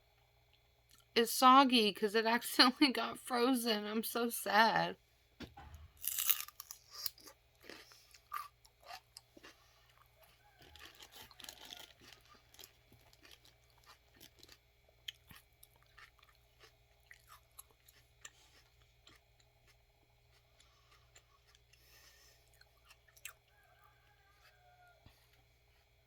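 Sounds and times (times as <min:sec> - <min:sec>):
celery crunching bite: 0:06.0 - 0:09.3, 0:10.6 - 0:19.2
crunchy chewing: 0:06.0 - 0:26.0.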